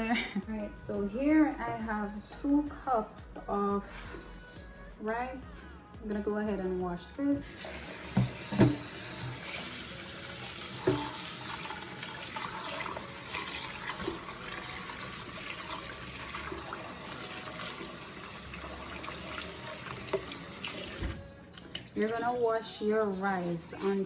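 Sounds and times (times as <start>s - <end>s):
tap running into a pot: 8.1s - 9.6s, 10.7s - 14.3s.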